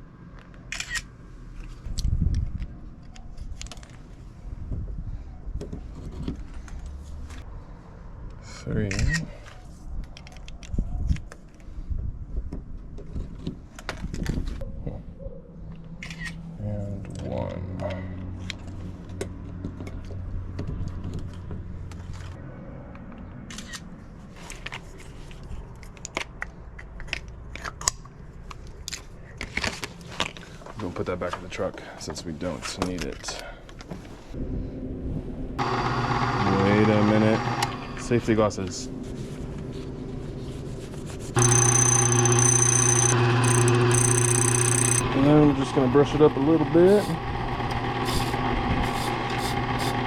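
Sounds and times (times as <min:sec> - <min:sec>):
cutter whining high: 0:35.6 - 0:38.0, 0:41.4 - 0:50.0
small tools clicking and rattling: 0:41.4 - 0:45.0
key-cutting machine motor humming: 0:41.4 - 0:45.2.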